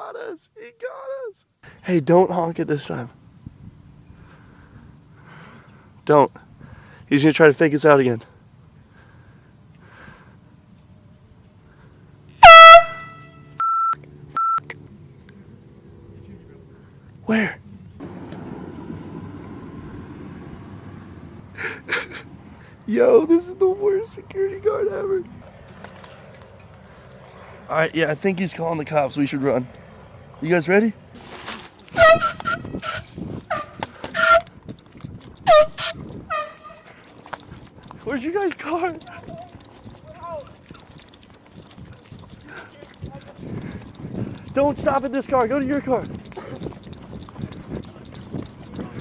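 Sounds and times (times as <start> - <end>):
air horn blast: 12.4 - 13.6, 31.9 - 34.5, 35.5 - 36.9
electronic beeps: 13.6 - 14.6.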